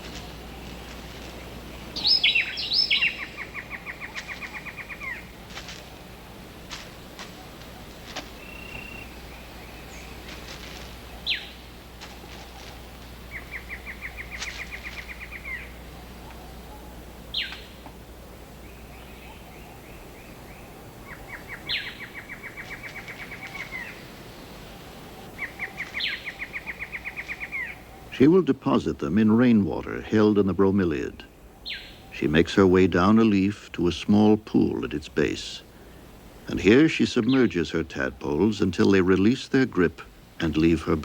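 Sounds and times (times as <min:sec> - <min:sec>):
animal calls with pulsed trills: 0:18.6 - 0:28.2.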